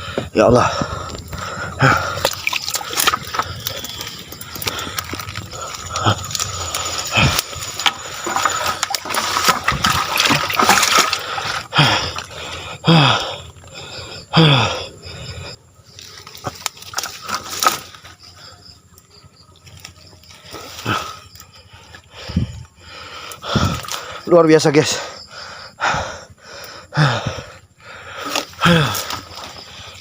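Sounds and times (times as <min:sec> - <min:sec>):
water splashing: 0:01.8 - 0:12.4.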